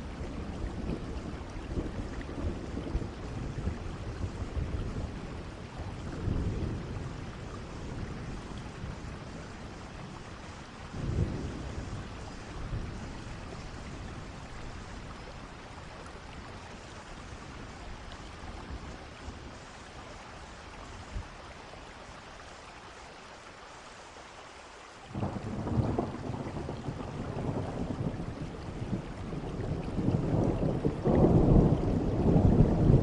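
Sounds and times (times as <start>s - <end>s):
thunder rumbling: 0.0s - 15.3s, 25.1s - 33.0s
steady rain falling: 0.0s - 33.0s.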